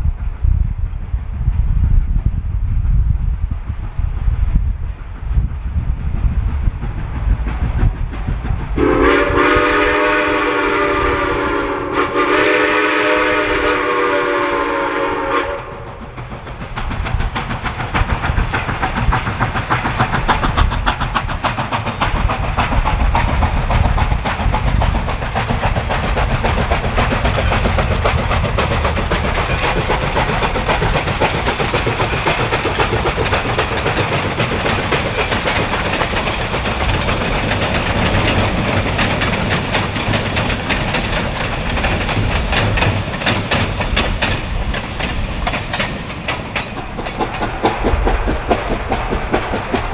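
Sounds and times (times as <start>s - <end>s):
train rumble: 0.0s - 49.9s
train clattering over rails: 2.8s - 49.9s
steam locomotive chime whistle: 8.8s - 15.8s.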